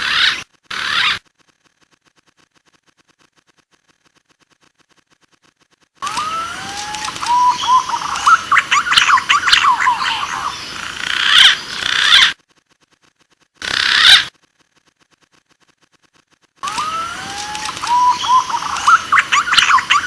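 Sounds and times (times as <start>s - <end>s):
pigeon whistling calls: 6.0s - 10.5s, 16.6s - 20.0s.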